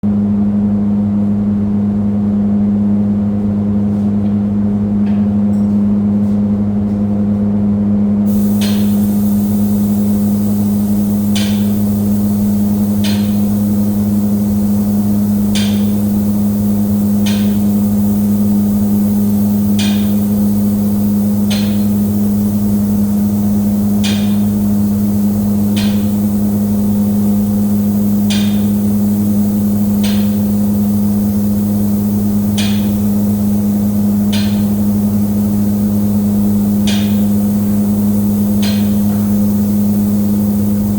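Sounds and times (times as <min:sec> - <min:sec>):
electric motor hum: 0:08.3 - 0:40.9
hiss of spraying air: 0:08.3 - 0:40.9.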